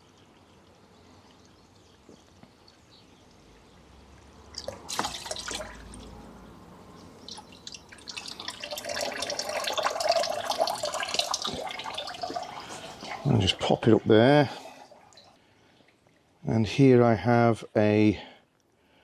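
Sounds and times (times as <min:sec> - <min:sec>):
water splashing into container: 0:04.2 - 0:06.5, 0:07.2 - 0:16.0.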